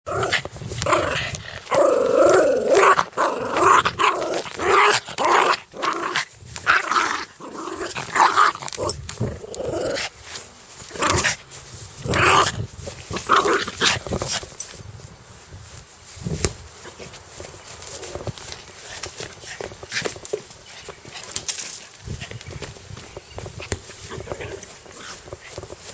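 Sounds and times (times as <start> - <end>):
dog growling: 0.1 - 10.1.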